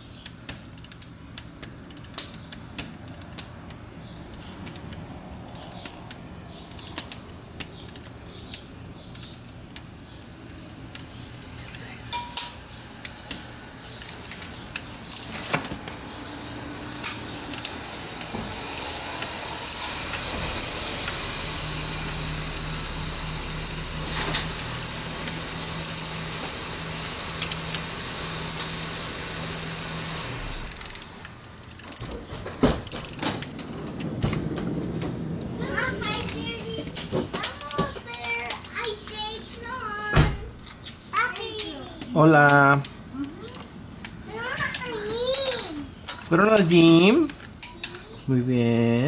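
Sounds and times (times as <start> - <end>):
steady low hum: 0.0 - 41.1
bolt tightening clicks: 0.2 - 11.2, 13.0 - 15.4, 16.9 - 23.0, 24.7 - 26.6, 28.5 - 34.0, 42.0 - 44.8
metal tools clinking: 12.1 - 12.6, 28.5 - 34.1, 42.4 - 43.8, 46.0 - 48.2.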